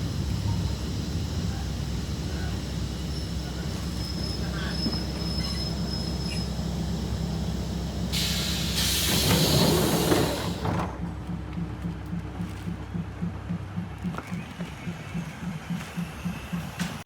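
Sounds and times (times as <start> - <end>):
loud hiss: 0.0 - 10.6
diesel engine rumble: 0.0 - 17.0
high squeal: 3.1 - 6.6.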